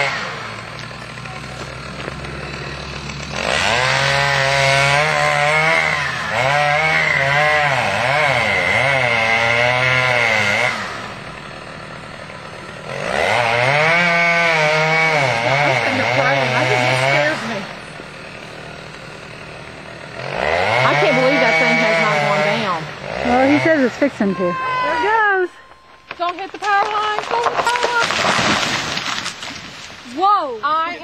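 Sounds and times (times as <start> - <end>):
chainsaw idling and cutting: 0.0 - 31.0.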